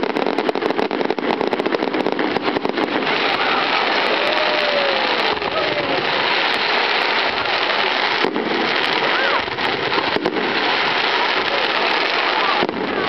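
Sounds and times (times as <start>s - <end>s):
fireworks bangs: 0.0s - 13.0s
fireworks crackling: 0.0s - 13.0s.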